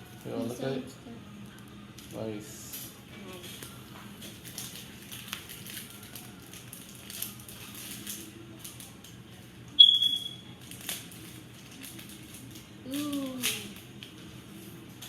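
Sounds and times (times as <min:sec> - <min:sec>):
crinkling card wrappers: 0:03.5 - 0:09.2, 0:10.6 - 0:15.0
high-pitched electronic beep: 0:09.8 - 0:10.4.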